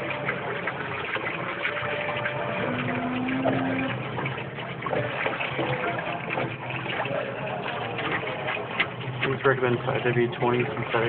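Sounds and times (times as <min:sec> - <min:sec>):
oil pouring: 0:00.0 - 0:11.0
short steady hum: 0:01.7 - 0:04.5.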